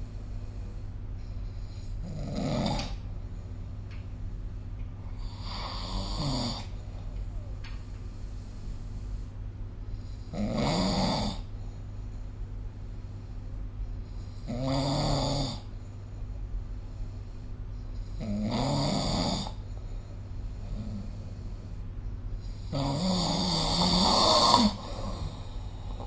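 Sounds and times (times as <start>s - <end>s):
steady low hum: 0.0s - 26.0s
person snoring: 1.7s - 3.0s, 5.2s - 6.8s, 10.3s - 11.5s, 14.4s - 15.7s, 18.2s - 19.6s, 22.4s - 26.0s.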